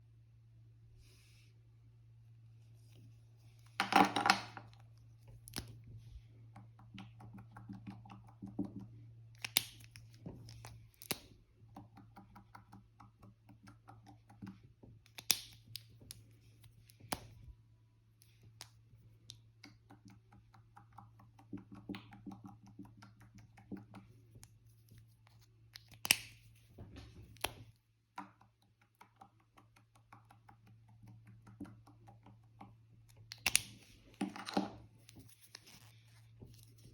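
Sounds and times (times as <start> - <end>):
low steady hum: 0.0 - 28.2.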